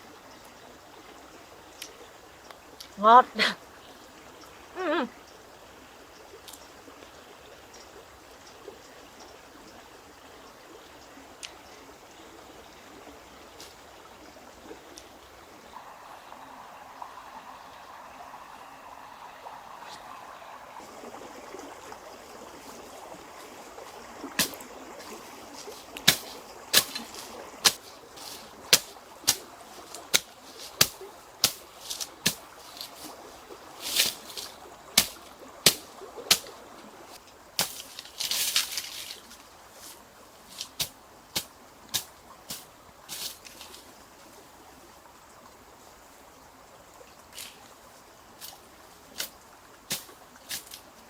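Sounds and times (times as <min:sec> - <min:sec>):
trickle of running water: 0:00.0 - 0:51.0
rustling bursts: 0:24.4 - 0:36.5.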